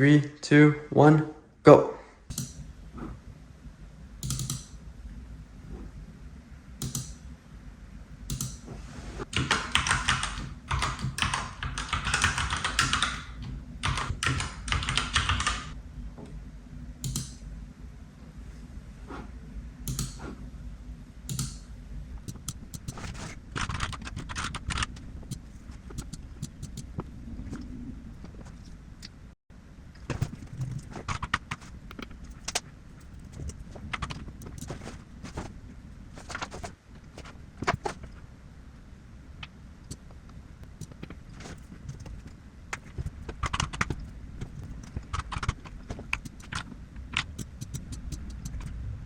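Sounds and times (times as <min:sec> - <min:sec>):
low steady hum: 0:00.0 - 0:49.0
keyboard typing: 0:04.2 - 0:04.8, 0:08.3 - 0:15.8, 0:22.2 - 0:27.0, 0:30.1 - 0:35.5, 0:39.9 - 0:48.8.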